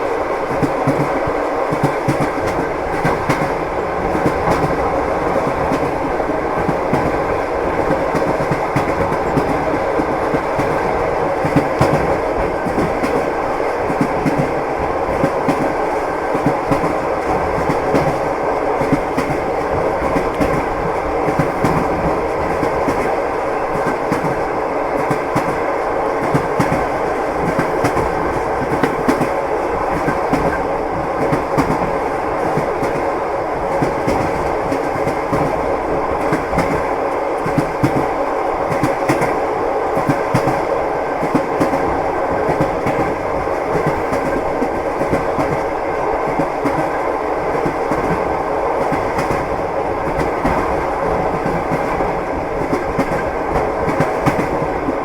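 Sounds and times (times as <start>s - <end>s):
train wheels clattering over rails: 0.0s - 55.0s.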